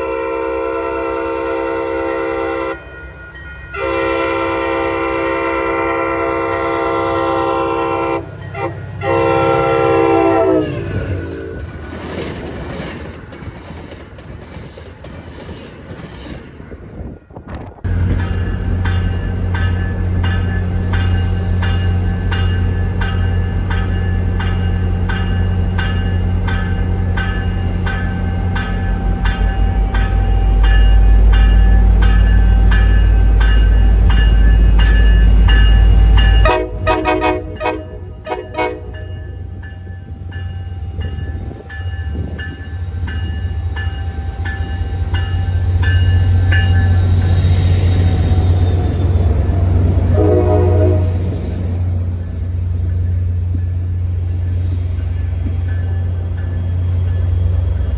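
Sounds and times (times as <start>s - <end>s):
train horn blasts: 0.0s - 3.1s, 3.7s - 11.6s, 35.9s - 39.6s, 49.9s - 51.4s
train passing with low rumble: 0.0s - 57.9s.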